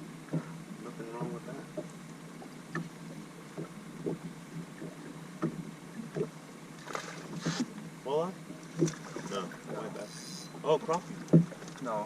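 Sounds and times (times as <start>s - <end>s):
steady low hum: 0.0s - 12.0s
short rushing hiss: 7.4s - 7.7s.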